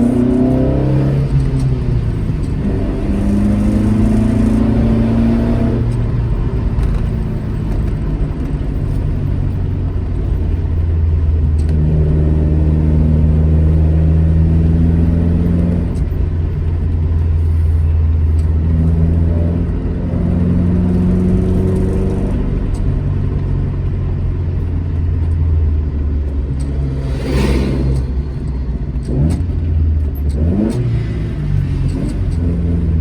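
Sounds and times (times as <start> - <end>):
car engine accelerating: 0.0 - 33.0
brief rushing noise: 26.7 - 28.9.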